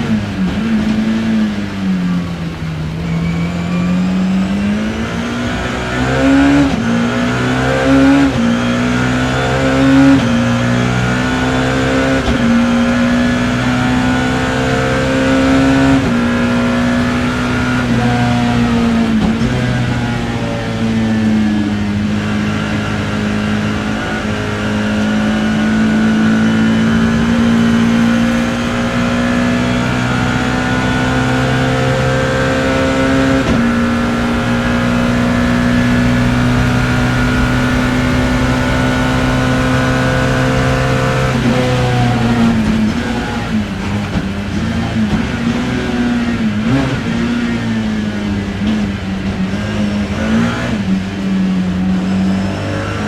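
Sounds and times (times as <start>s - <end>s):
race car engine accelerating: 0.0s - 53.0s.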